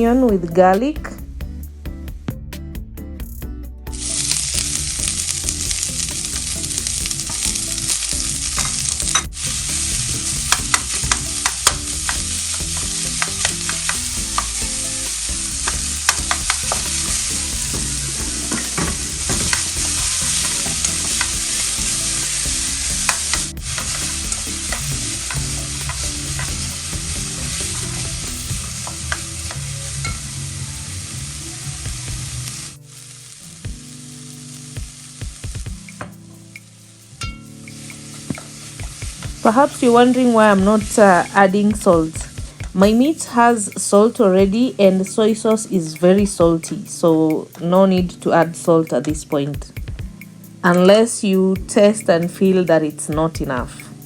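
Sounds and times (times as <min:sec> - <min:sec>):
onion and garlic sizzling in oil: 0:03.9 - 0:54.0
spoon stirring and knocking pan: 0:04.3 - 0:30.4.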